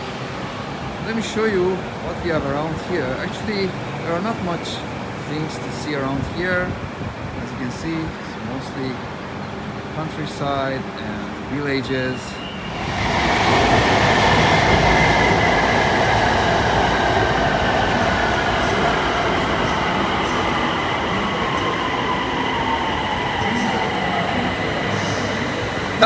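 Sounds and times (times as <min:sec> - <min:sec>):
electric train rumbling: 0:12.2 - 0:26.0.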